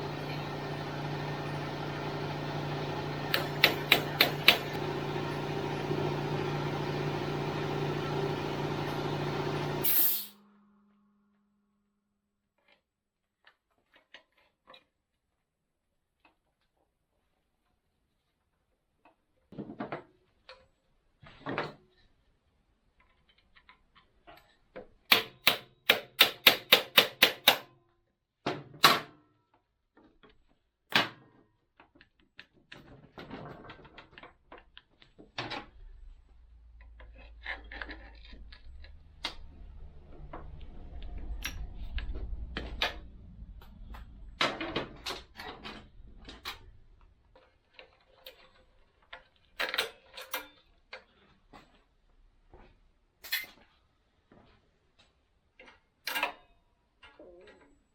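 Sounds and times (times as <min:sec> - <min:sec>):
low rumble: 0:38.6 - 0:45.0.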